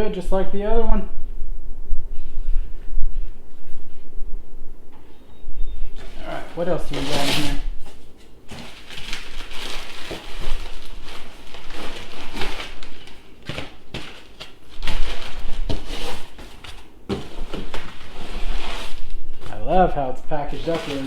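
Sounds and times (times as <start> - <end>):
packing material rustling: 6.0 - 21.0.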